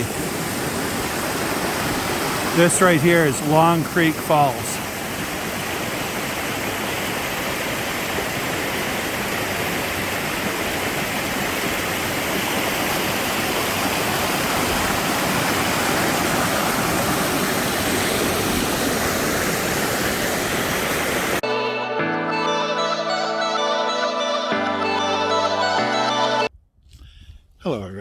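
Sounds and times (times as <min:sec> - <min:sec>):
waterfall roaring: 0:00.0 - 0:21.4.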